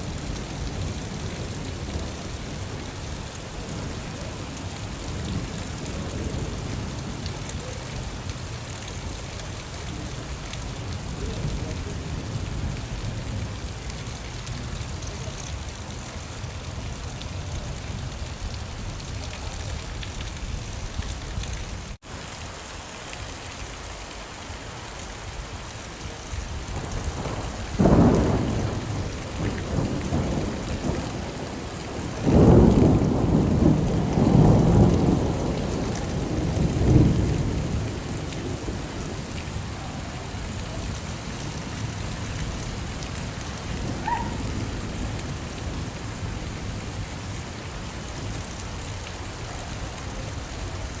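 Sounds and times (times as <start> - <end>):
steady rainfall: 0.0 - 51.0
thunder rumbling: 26.5 - 47.0.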